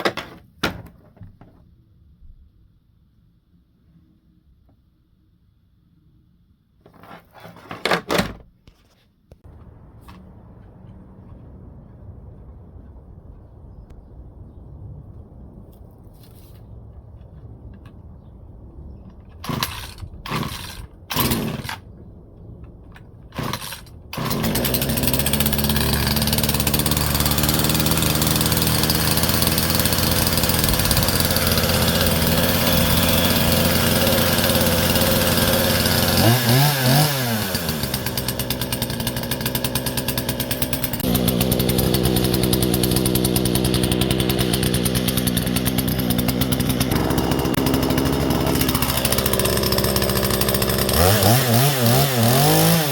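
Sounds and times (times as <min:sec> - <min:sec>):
chainsaw starting and running: 0:19.3 - 0:21.8, 0:23.3 - 0:52.9.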